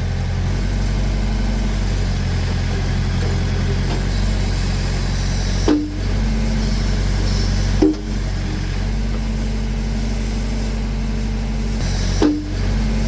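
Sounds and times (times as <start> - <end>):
backhoe engine running: 0.0 - 13.0
sharp knock: 7.8 - 8.1, 12.2 - 12.5.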